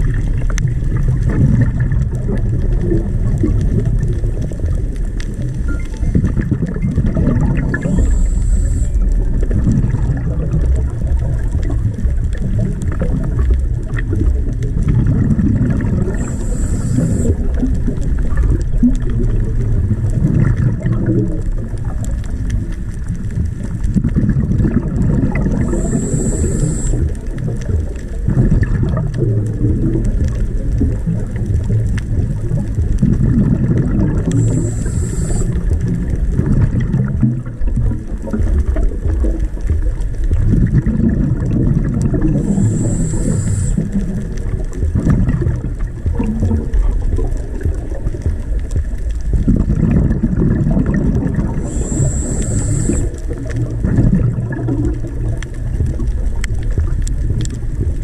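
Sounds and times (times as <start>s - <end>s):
rumble of exhaled bubbles: 0.0s - 58.0s
regulator inhale hiss: 7.7s - 9.2s, 16.0s - 17.5s, 25.4s - 27.2s, 34.2s - 35.7s, 42.3s - 44.0s, 51.6s - 53.3s.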